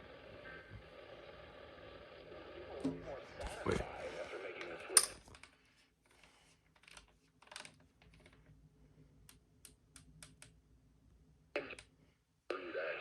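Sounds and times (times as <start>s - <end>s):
faint clicks and taps: 9.2s - 10.6s.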